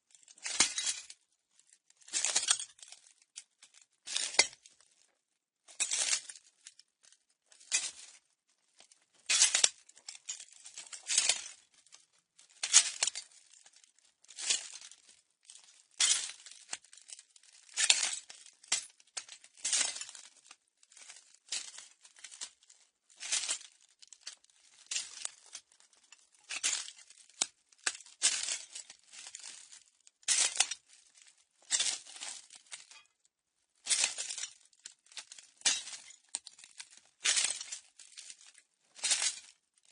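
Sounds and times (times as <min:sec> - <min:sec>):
footsteps crunching on broken glass: 0:00.4 - 0:01.1, 0:02.0 - 0:03.2, 0:04.1 - 0:04.6, 0:09.2 - 0:11.9, 0:12.6 - 0:22.4, 0:23.2 - 0:29.7, 0:30.3 - 0:33.2, 0:33.8 - 0:39.5
glass shards clinking: 0:35.6 - 0:36.2.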